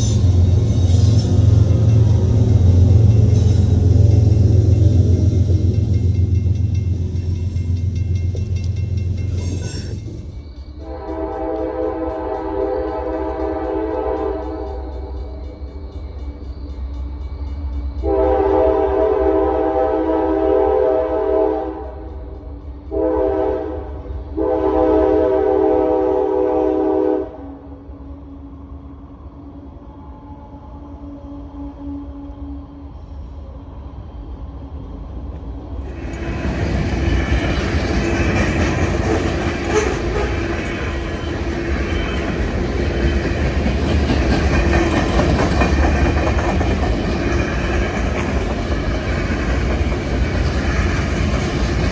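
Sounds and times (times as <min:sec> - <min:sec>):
diesel locomotive rumble: 0:00.0 - 0:10.5, 0:35.8 - 0:51.9
locomotive air horn: 0:10.8 - 0:14.6, 0:18.0 - 0:21.9, 0:22.9 - 0:27.5, 0:39.1 - 0:40.6.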